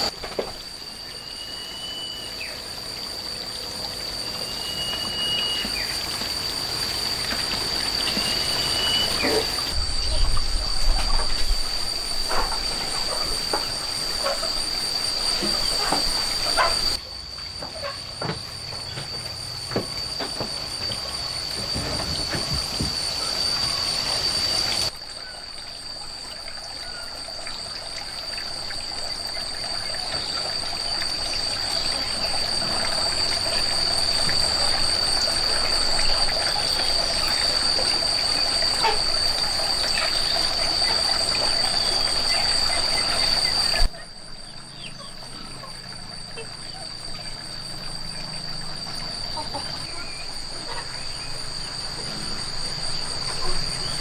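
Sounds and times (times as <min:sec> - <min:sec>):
high-pitched insect drone: 0:00.0 - 0:25.0, 0:25.7 - 0:54.0
water trickling: 0:18.6 - 0:50.1.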